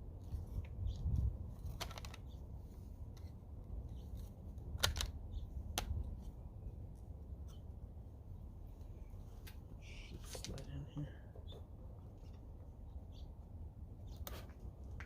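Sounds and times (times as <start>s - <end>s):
steady low rumble: 0.0s - 14.2s
plastic parts clicking: 1.6s - 2.2s, 4.8s - 5.2s.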